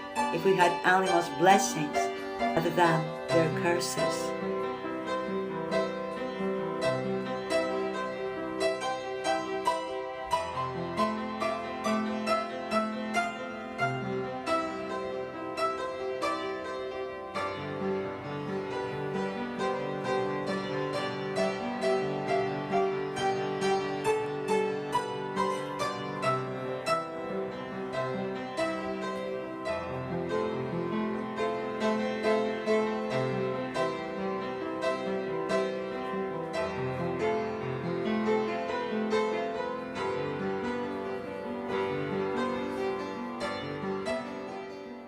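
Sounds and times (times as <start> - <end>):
keyboard notes music: 0.0 - 45.0.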